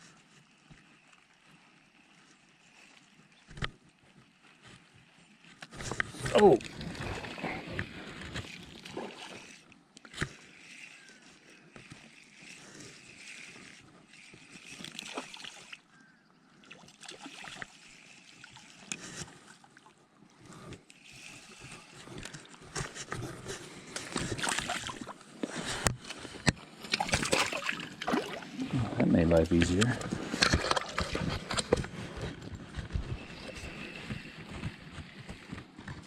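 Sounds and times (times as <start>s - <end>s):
small splashes and clicks: 5.6s - 10.9s, 11.8s - 15.9s, 16.6s - 20.0s, 23.9s - 28.6s
river water running: 13.1s - 15.9s, 16.6s - 22.6s, 26.6s - 31.2s.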